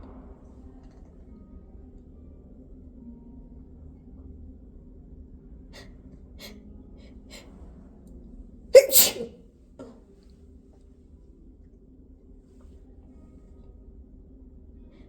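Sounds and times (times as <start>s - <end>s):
woman hitching breaths: 8.8s - 9.3s
woman sneezing: 8.8s - 9.4s.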